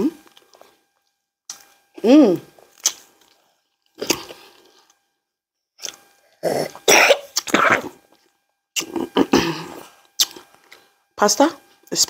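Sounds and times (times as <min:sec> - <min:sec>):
person coughing: 0:06.5 - 0:08.0, 0:08.8 - 0:09.8
throat clearing: 0:08.8 - 0:09.8.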